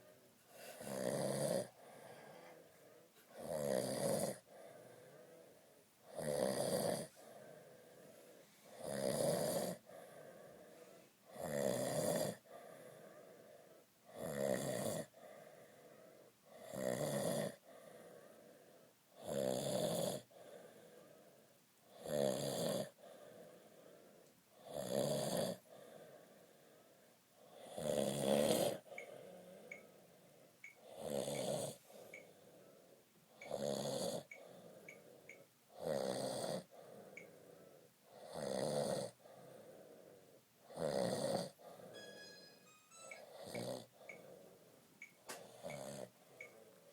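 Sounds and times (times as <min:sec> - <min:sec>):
quiet breathing: 0:00.0 - 0:19.4, 0:20.1 - 0:22.2, 0:22.8 - 0:24.9, 0:25.5 - 0:46.9
man snoring: 0:00.8 - 0:02.0, 0:03.4 - 0:04.5, 0:06.1 - 0:07.2, 0:08.7 - 0:09.8, 0:11.3 - 0:12.4, 0:14.1 - 0:15.1, 0:16.5 - 0:17.6, 0:19.2 - 0:20.3, 0:21.9 - 0:23.0, 0:24.6 - 0:25.6, 0:27.6 - 0:28.9, 0:30.8 - 0:32.2, 0:33.4 - 0:34.4, 0:35.8 - 0:37.3, 0:38.1 - 0:39.7, 0:40.7 - 0:41.6, 0:43.1 - 0:44.2, 0:45.4 - 0:46.5.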